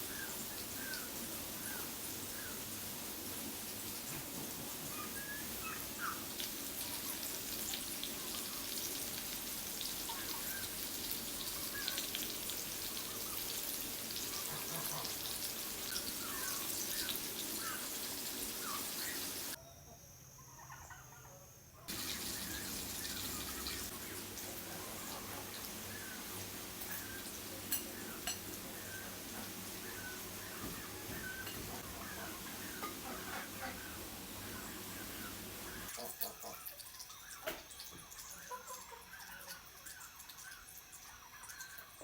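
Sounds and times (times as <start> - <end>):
steady hiss: 0.0 - 19.6, 21.9 - 36.0
birds chirping: 4.7 - 7.4, 9.8 - 19.6, 21.8 - 36.5.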